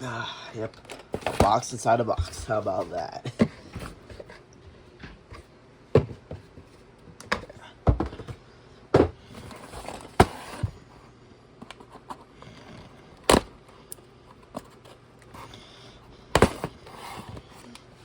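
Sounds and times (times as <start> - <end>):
cardboard scraping and rustling: 1.0 - 1.6, 9.4 - 10.8, 16.4 - 17.6.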